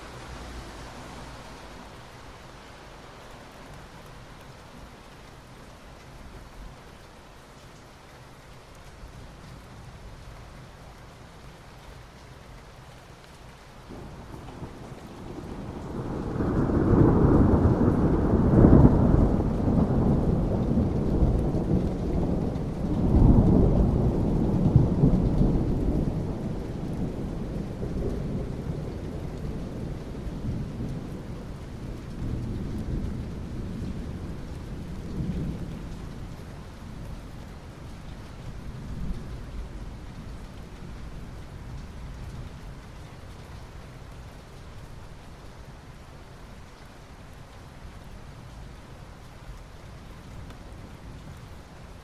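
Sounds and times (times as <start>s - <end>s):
steady rainfall: 0.0s - 52.0s
rolling thunder: 13.9s - 37.1s.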